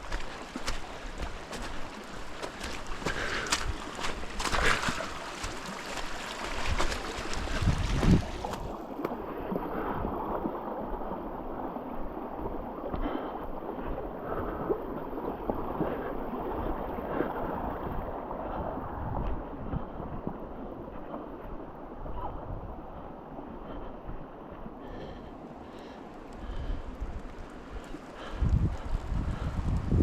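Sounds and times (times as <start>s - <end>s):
knocks and splashes: 0.0s - 9.3s
rushing river water: 0.0s - 30.0s.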